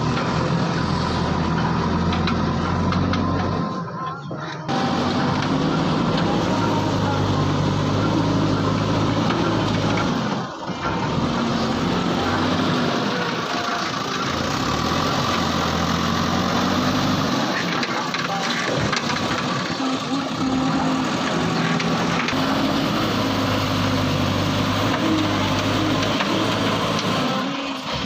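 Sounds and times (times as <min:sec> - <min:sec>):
heavy diesel engine running: 0:00.0 - 0:28.0.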